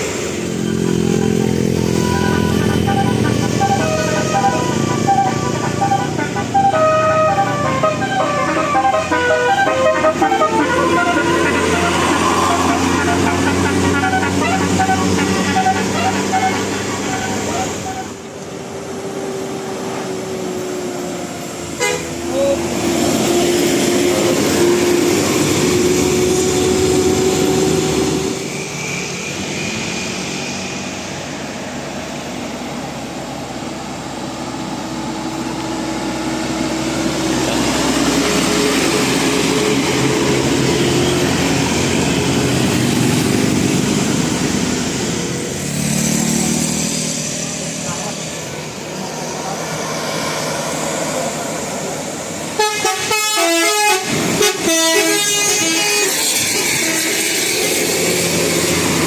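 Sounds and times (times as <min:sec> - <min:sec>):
engine and road noise: 0:00.0 - 0:59.0
bus horn long notes: 0:00.7 - 0:18.2, 0:21.8 - 0:22.7, 0:52.5 - 0:58.1.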